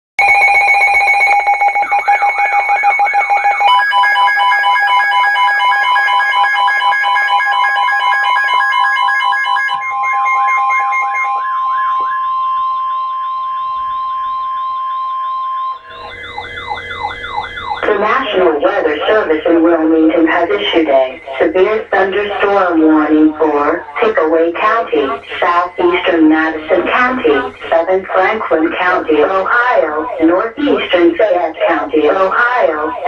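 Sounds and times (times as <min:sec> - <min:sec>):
warbling siren-like alert tone: 0:00.2 - 0:33.0
steady and beeping alert tones: 0:07.9 - 0:33.0.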